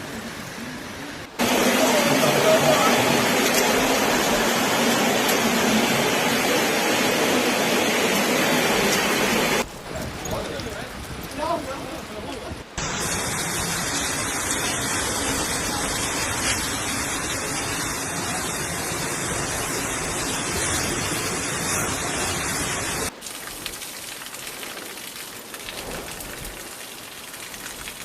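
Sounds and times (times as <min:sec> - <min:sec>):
heavy rain pouring: 0:00.0 - 0:28.0
light rain: 0:00.0 - 0:28.0.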